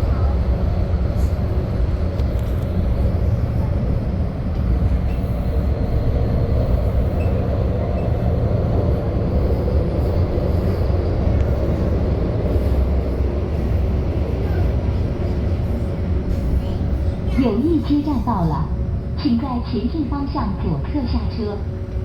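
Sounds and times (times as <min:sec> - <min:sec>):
tram wheels rumbling on rails: 0:00.0 - 0:22.0.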